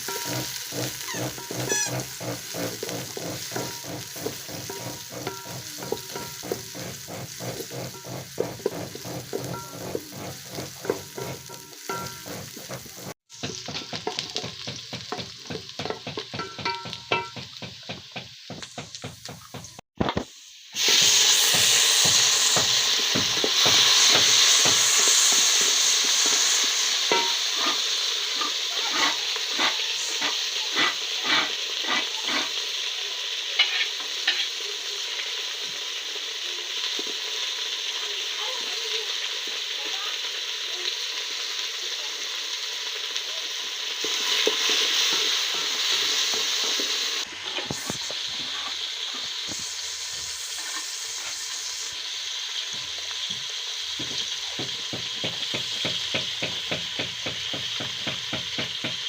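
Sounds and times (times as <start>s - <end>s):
spoon scraping a pot: 0.0s - 14.2s, 28.9s - 32.5s
food sizzling in a pot: 0.0s - 59.0s.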